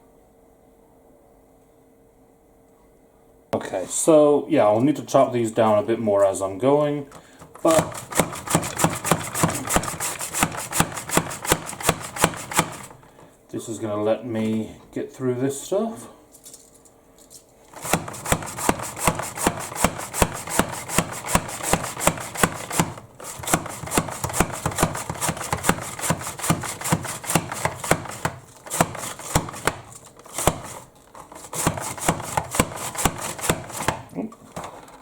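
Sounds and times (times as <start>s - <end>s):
vegetable chopper chopping: 7.6s - 13.0s, 17.7s - 34.1s.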